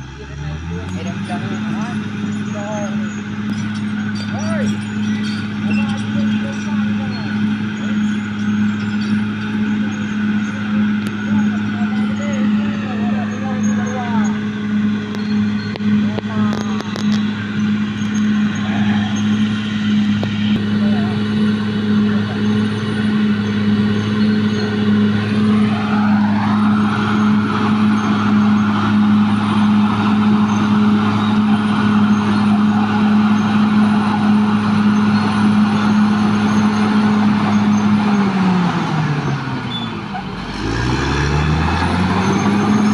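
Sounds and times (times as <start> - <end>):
bulldozer diesel engine under load: 0.0 - 42.9
broad rushing noise: 10.2 - 42.9.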